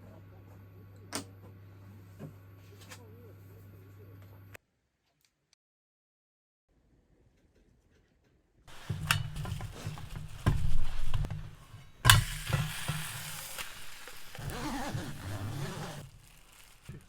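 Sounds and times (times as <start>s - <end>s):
utensils knocking against pan: 8.7s - 14.8s
food sizzling in a pan: 8.7s - 17.0s.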